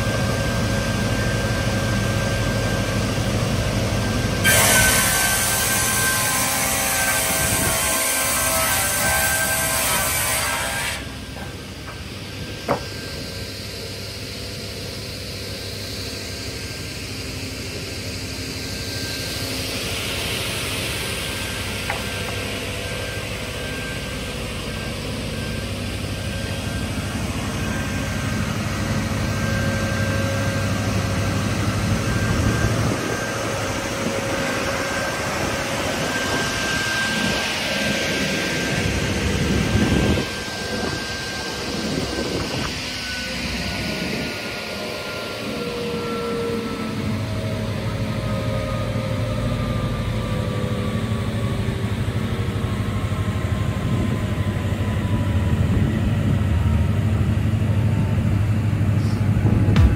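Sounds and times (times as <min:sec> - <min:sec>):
saw whining: 0:03.9 - 0:49.9.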